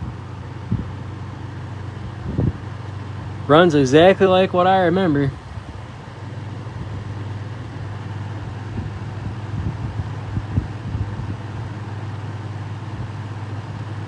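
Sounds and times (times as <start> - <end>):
box fan running: 0.0 - 14.0
soft low thumps: 0.7 - 1.0.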